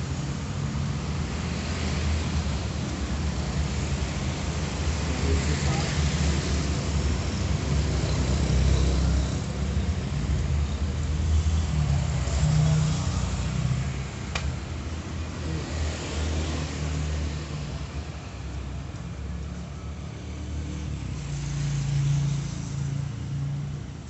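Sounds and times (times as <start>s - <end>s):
sharp click: 14.3s - 14.6s.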